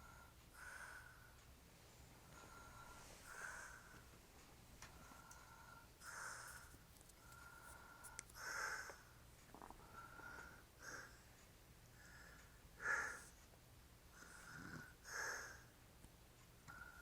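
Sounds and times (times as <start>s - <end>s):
man snoring: 14.4s - 15.6s.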